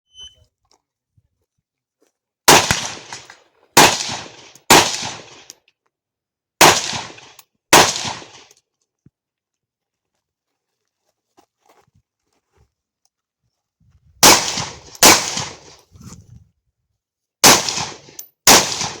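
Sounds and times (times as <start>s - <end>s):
rifle shots with echo: 2.5s - 5.5s, 6.6s - 8.5s, 14.2s - 15.8s, 17.4s - 19.0s.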